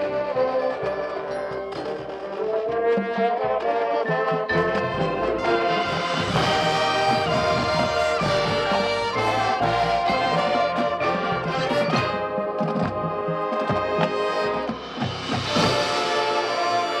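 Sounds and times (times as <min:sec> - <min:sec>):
marching band playing: 0:00.0 - 0:17.0
brass sustained chords: 0:02.4 - 0:13.2, 0:13.9 - 0:17.0
drum hits: 0:13.7 - 0:16.4.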